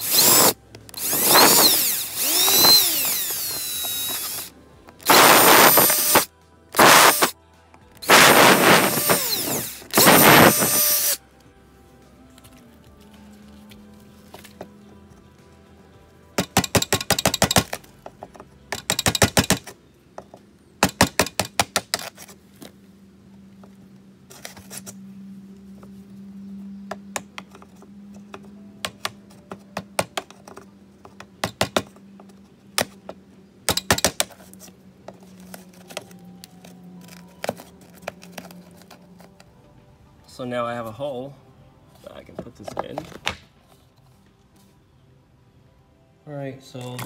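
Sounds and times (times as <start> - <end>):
power drill rattling: 0.0 - 7.3, 8.0 - 11.2.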